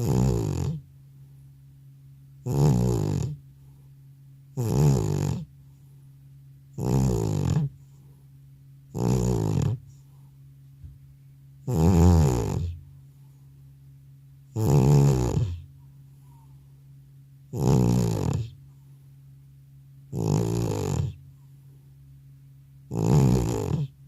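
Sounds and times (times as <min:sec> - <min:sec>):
cat snoring loudly: 0:00.0 - 0:00.8, 0:02.4 - 0:03.4, 0:04.6 - 0:05.5, 0:06.7 - 0:08.0, 0:08.9 - 0:10.0, 0:11.6 - 0:12.8, 0:14.5 - 0:15.7, 0:17.5 - 0:18.6, 0:20.1 - 0:21.2, 0:22.9 - 0:24.0.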